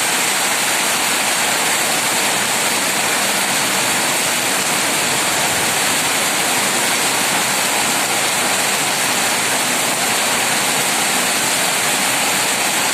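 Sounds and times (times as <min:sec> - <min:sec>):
heavy rain and wind: 0:00.0 - 0:12.9.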